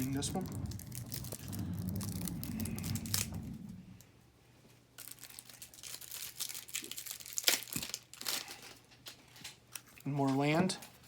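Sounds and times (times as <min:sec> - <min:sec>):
wrapper tearing and crinkling: 0:00.0 - 0:03.8, 0:05.0 - 0:10.4
low rumble: 0:00.0 - 0:04.4.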